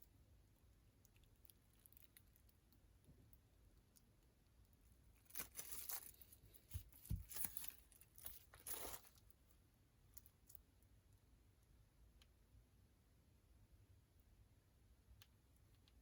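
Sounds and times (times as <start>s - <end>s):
packaging tearing and crinkling: 5.3s - 6.3s
soft thuds: 6.7s - 7.7s.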